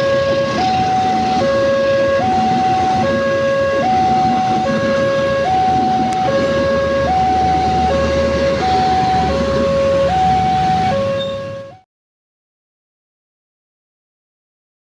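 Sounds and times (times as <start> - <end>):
two-tone crossing alarm: 0.0 - 11.9.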